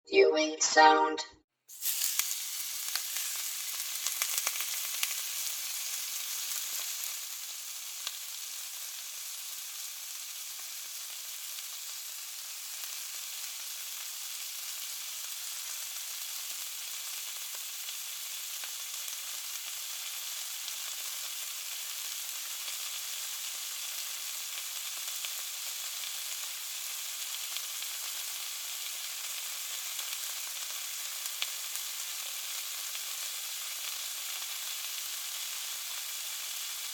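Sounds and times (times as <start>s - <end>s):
meat sizzling in a frying pan: 1.7s - 36.9s.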